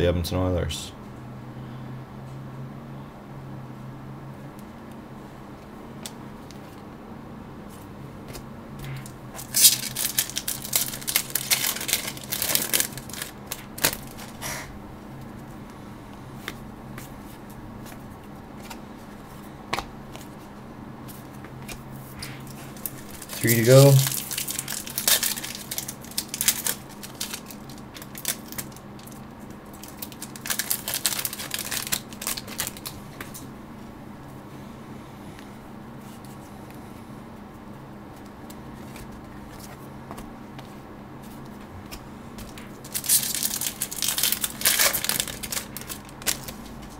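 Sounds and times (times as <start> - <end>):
low electrical hum: 0.0 - 46.9
foil wrapper tearing and crinkling: 9.4 - 14.4, 22.4 - 33.0, 42.8 - 46.7.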